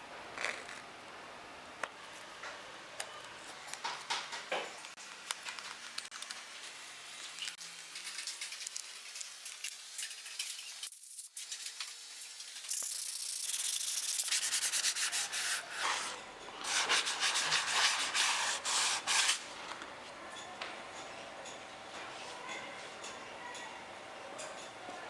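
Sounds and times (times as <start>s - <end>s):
sandpaper rubbing on plywood: 13.3s - 16.1s, 16.7s - 19.4s.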